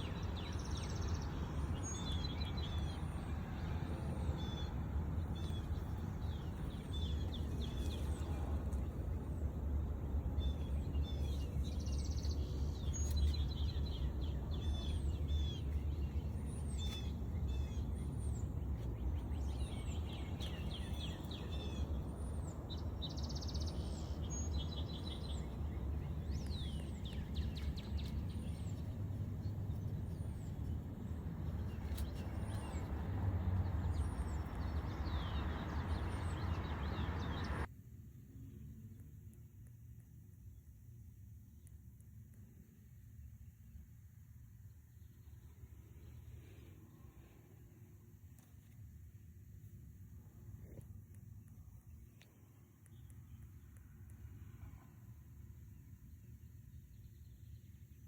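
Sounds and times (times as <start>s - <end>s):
birds chirping: 0.0s - 37.7s
steady low rumble: 0.0s - 58.0s.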